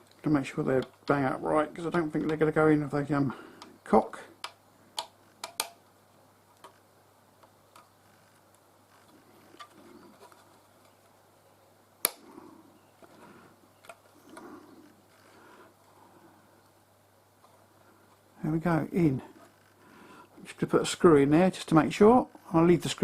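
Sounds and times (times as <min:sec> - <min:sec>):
plastic parts clicking together: 0:04.4 - 0:05.8, 0:13.8 - 0:14.5.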